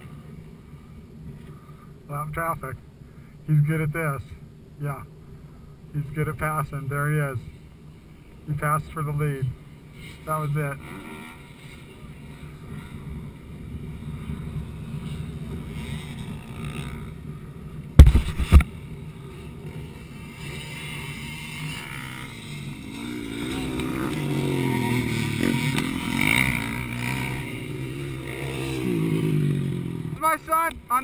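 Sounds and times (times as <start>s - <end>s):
dirt bike engines revving: 0.0s - 31.0s
loud double bump: 18.0s - 18.6s.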